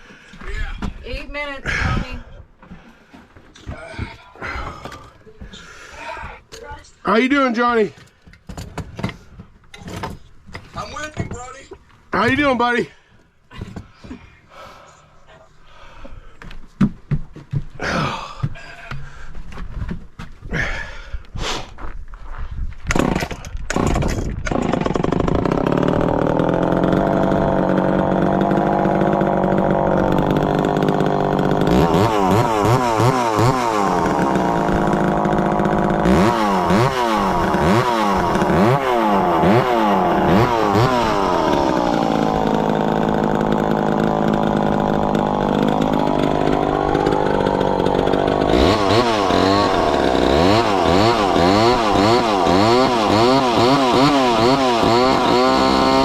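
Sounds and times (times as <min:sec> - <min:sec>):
chainsaw engine revving: 0:22.9 - 0:56.0.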